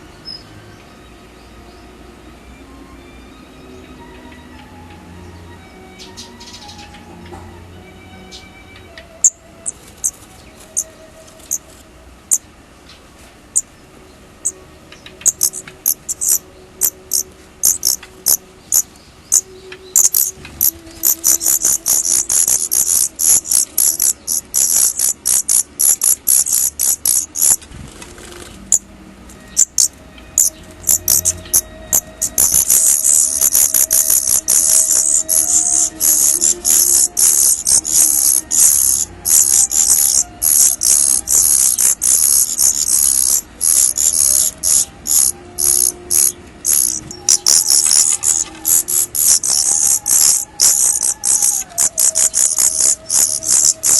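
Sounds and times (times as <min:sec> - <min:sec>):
bird chicks high thin calls: 0:14.4 - 0:27.7, 0:29.5 - 0:53.9.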